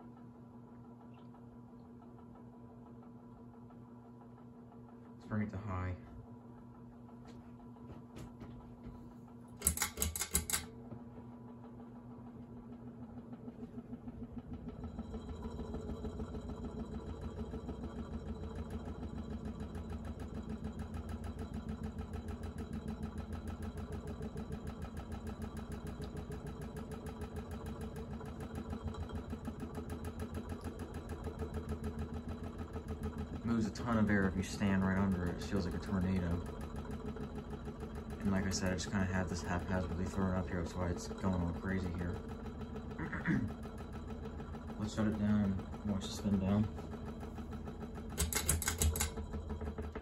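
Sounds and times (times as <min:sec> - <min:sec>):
ceiling fan motor humming: 0:00.0 - 0:50.0
fan rattle: 0:00.7 - 0:50.0
fast even clicking: 0:48.1 - 0:49.2.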